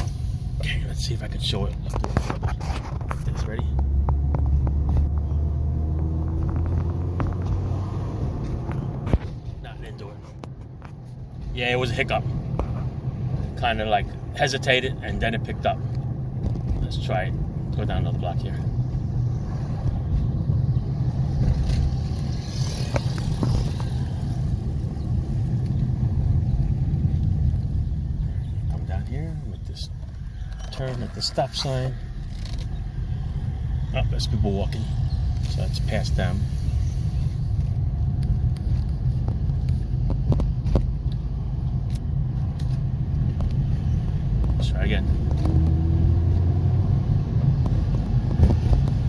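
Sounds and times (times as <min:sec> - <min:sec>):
car engine and road rumble: 0:00.0 - 0:49.0.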